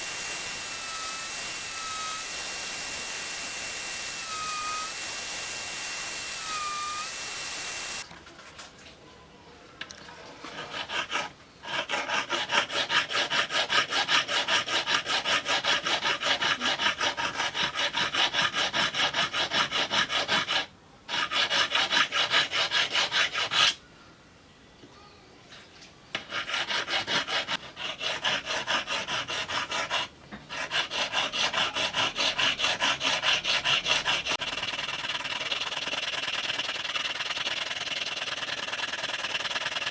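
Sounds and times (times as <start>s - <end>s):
rhythmic rubbing strokes: 0.0s - 8.0s
steady hiss with faint whine: 0.0s - 8.0s.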